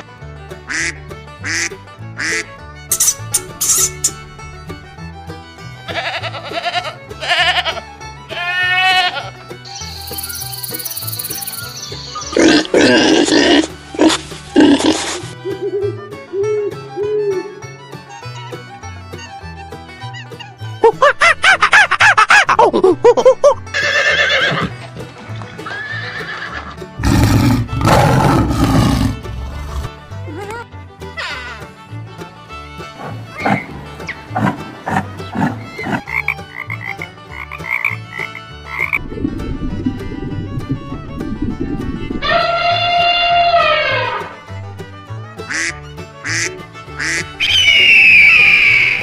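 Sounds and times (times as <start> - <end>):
background music: 0.0 - 49.0
goat or sheep bleating: 5.9 - 9.4
horse neighing: 23.7 - 24.7, 25.6 - 29.9
loud low sound: 39.0 - 42.7.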